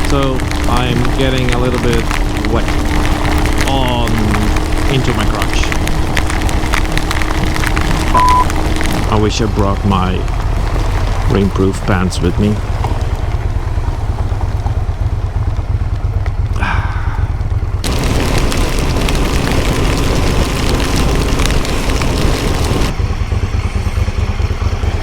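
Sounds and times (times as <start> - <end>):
loud hissing rush: 0.0 - 5.8, 16.6 - 22.9
wind buffeting and motorcycle engine: 0.0 - 25.0.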